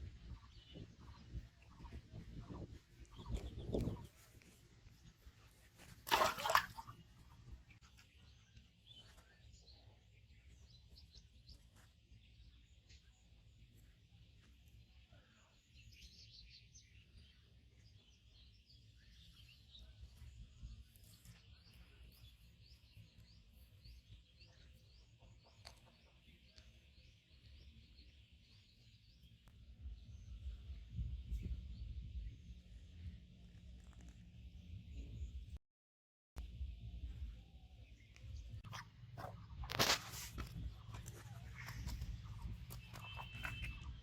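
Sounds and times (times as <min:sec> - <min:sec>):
low outdoor background: 0:00.0 - 0:35.6, 0:36.4 - 0:44.0
small birds chirping: 0:00.0 - 0:35.6, 0:36.4 - 0:44.0
small bird chirping: 0:36.6 - 0:44.0.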